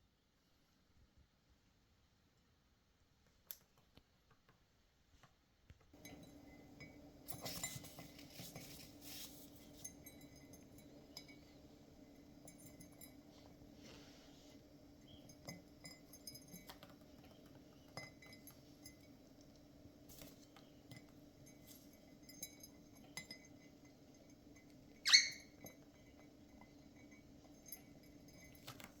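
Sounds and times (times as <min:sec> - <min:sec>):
light clicks and clinks: 0:05.9 - 0:29.0.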